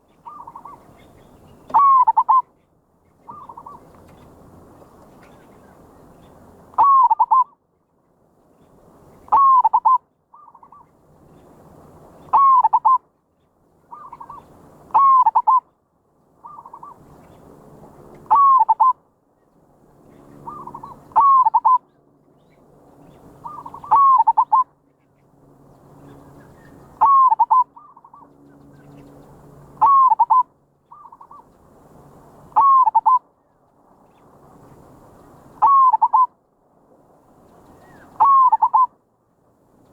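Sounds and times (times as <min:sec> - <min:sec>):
dove cooing: 0:00.0 - 0:01.0, 0:01.6 - 0:02.5, 0:03.2 - 0:03.9, 0:06.8 - 0:07.5, 0:09.3 - 0:10.8, 0:12.3 - 0:13.0, 0:13.9 - 0:15.6, 0:16.4 - 0:17.0, 0:18.3 - 0:19.0, 0:20.4 - 0:21.8, 0:23.4 - 0:24.7, 0:26.6 - 0:28.3, 0:29.8 - 0:31.5, 0:32.5 - 0:33.2, 0:35.6 - 0:36.3, 0:37.8 - 0:38.9.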